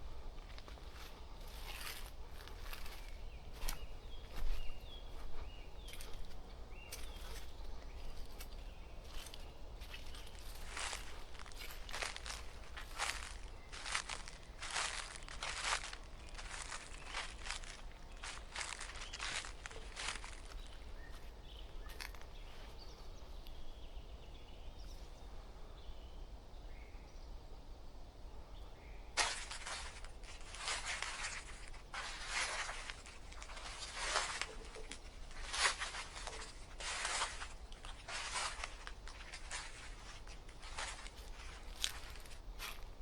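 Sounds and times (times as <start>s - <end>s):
footsteps crunching: 0.0s - 23.2s, 29.2s - 43.0s
faint bird chirps: 0.4s - 27.4s.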